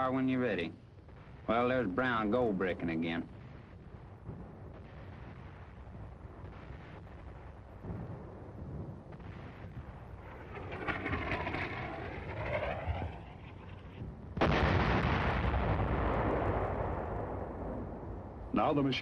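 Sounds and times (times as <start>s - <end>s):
artillery gun blast: 4.3s - 17.9s.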